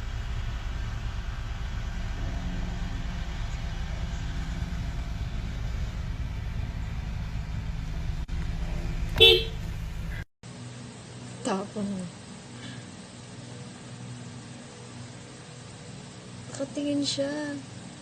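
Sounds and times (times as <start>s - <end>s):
low rumble: 0.0s - 10.3s.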